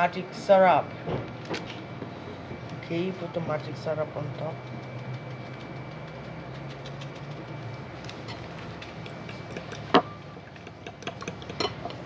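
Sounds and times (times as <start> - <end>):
steady low hum: 0.0 - 12.0
utensils clicking on a bowl: 4.3 - 12.0.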